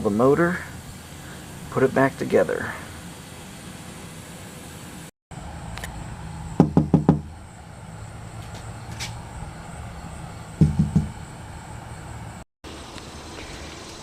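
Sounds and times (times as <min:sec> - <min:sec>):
steady low hum: 0:00.0 - 0:14.0
knocks: 0:06.6 - 0:07.3, 0:10.6 - 0:11.2.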